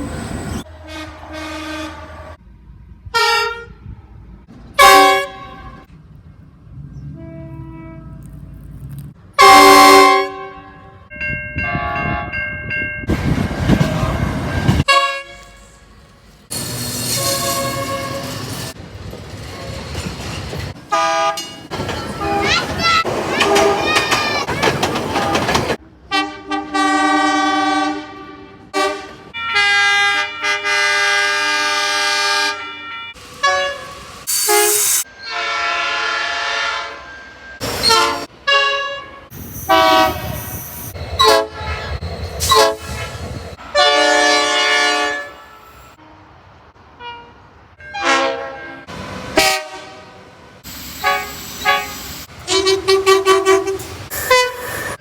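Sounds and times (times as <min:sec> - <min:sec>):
locomotive air horns: 0:00.0 - 0:02.4, 0:03.1 - 0:03.9, 0:04.8 - 0:05.9, 0:09.4 - 0:11.0, 0:14.7 - 0:18.8, 0:20.9 - 0:24.2, 0:25.1 - 0:46.3, 0:47.0 - 0:55.0.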